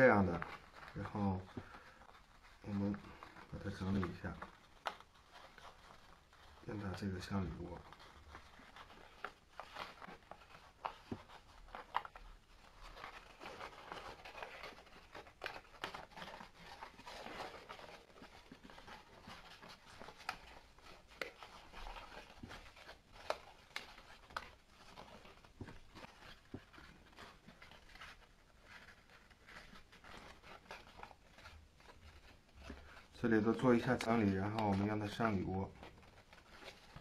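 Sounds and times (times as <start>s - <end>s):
paper folding and rustling: 0.0s - 37.0s.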